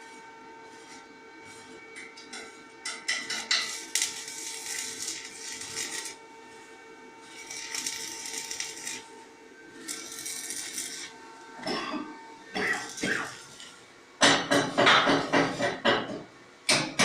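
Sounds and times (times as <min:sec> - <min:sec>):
arc welding crackling hiss: 0:02.9 - 0:11.3, 0:12.5 - 0:15.7.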